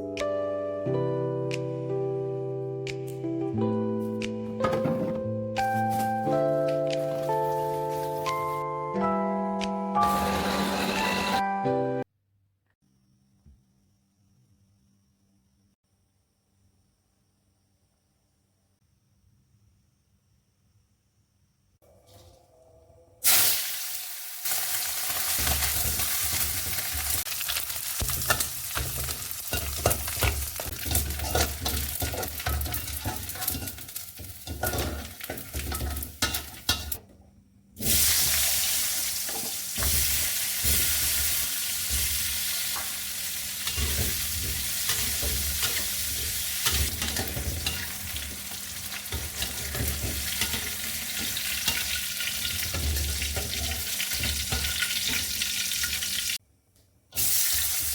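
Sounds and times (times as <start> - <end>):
spatula scraping pan: 10.0 - 11.4, 28.1 - 36.9
food sizzling in hot oil: 23.2 - 37.0, 37.8 - 56.4, 57.2 - 57.9.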